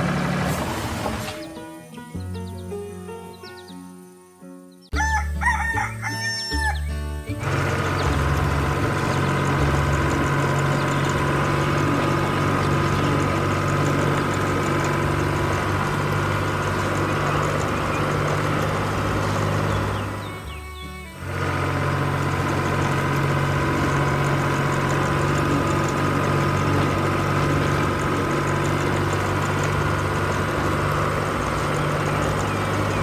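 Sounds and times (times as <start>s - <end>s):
vehicle engine drone: 0.0s - 1.5s, 5.0s - 33.0s
low background music notes: 0.1s - 33.0s
rooster crowing: 4.9s - 7.0s.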